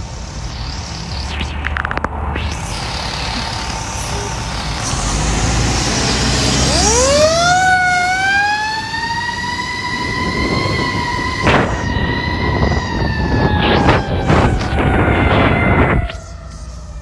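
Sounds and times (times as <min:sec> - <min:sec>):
truck engine rumble: 0:00.0 - 0:17.0
mechanical siren wailing: 0:00.2 - 0:17.0.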